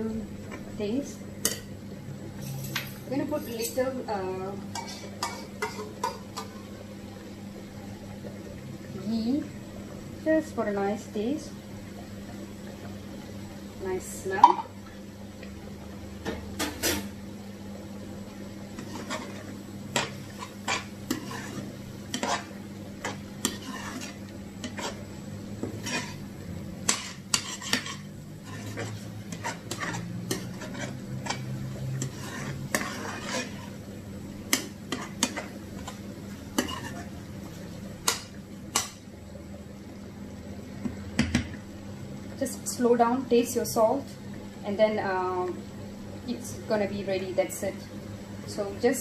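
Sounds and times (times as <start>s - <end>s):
faint frying sizzle: 0.0s - 49.0s
steady low hum: 0.0s - 49.0s
spatula scraping frying pan: 4.7s - 6.6s, 18.7s - 33.9s, 34.5s - 37.3s.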